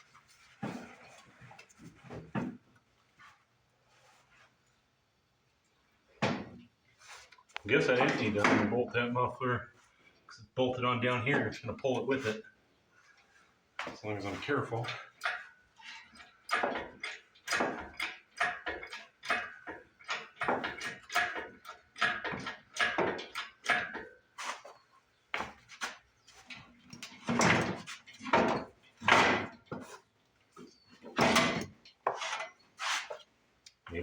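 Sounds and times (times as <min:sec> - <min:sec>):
metal clanks and scrapes: 0:13.8 - 0:24.8, 0:25.8 - 0:33.3.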